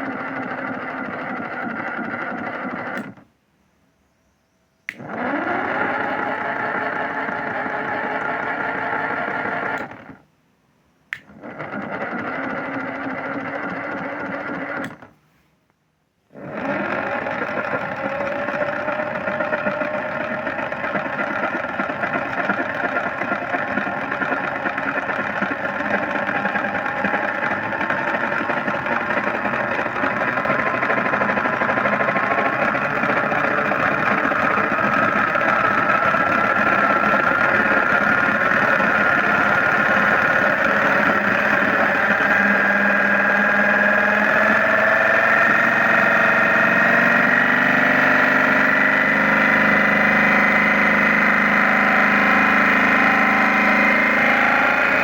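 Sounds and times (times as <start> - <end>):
washing machine motor whine: 0.0 - 3.3, 4.9 - 10.2, 11.1 - 15.1, 16.3 - 55.0.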